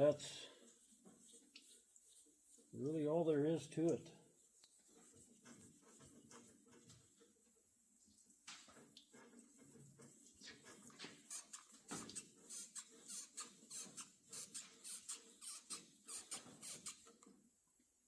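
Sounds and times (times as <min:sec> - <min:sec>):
squeaky wet sanding strokes: 0:00.6 - 0:07.2, 0:09.1 - 0:17.1.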